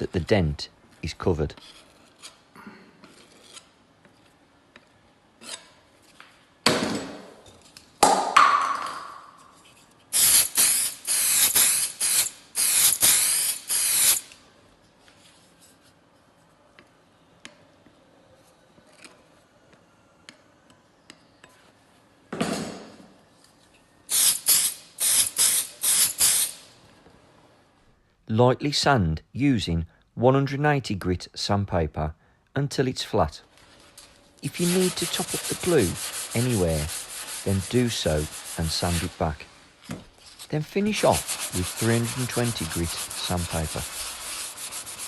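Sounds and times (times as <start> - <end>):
hand rasping across worktop edge: 40.9 - 45.0.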